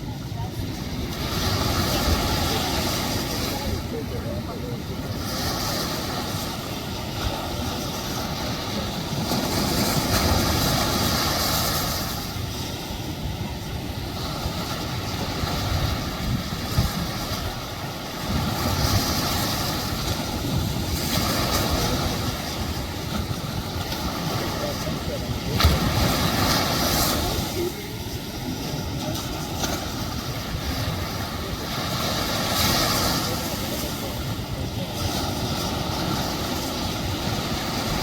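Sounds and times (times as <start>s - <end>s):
ocean surf rushing: 0.0s - 38.0s
wind rumble on microphone: 0.0s - 38.0s.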